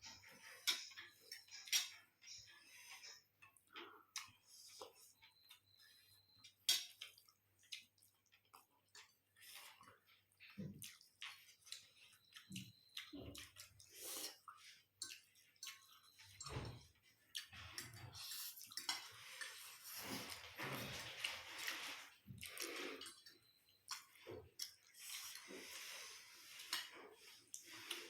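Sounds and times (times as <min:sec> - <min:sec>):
utensils clicking against dishes: 0:00.0 - 0:03.6
wet chewing: 0:01.3 - 0:16.3, 0:17.1 - 0:28.0.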